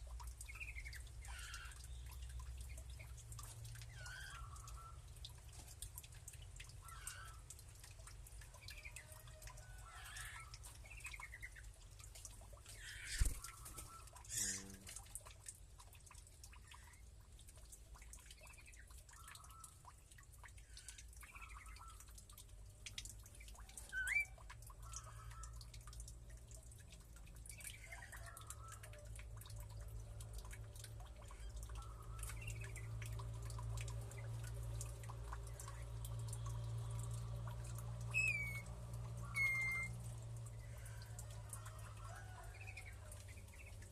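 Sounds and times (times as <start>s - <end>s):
low steady hum: 0.0s - 43.9s
birds chirping: 12.8s - 14.8s
harsh bird calls: 14.3s - 14.8s.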